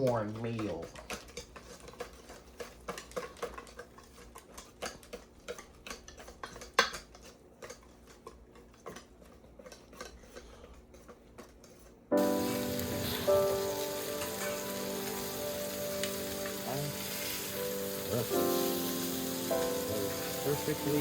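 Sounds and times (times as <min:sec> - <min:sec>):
utensil tapping mixing bowl: 0:00.0 - 0:11.1
steady hiss: 0:12.2 - 0:21.0.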